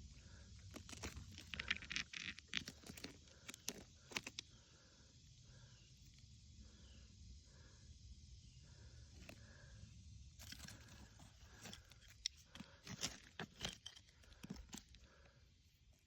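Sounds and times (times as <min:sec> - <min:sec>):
rocks and gravel crunching: 0:00.6 - 0:04.4, 0:10.4 - 0:15.3
faint chirp: 0:03.3 - 0:12.8.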